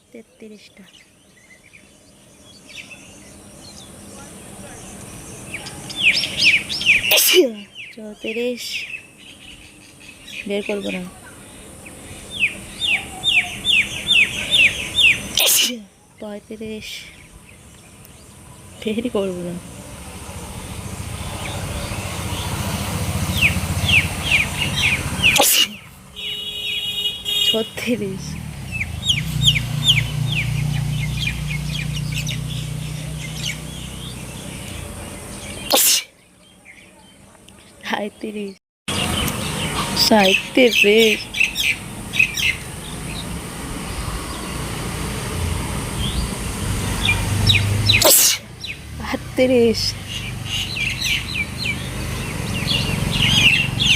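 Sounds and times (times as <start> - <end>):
small birds chirping: 0.0 - 44.9, 45.9 - 53.9
woman sneezing: 7.1 - 7.6, 15.4 - 15.9, 25.4 - 25.8, 35.7 - 36.1, 48.0 - 48.5.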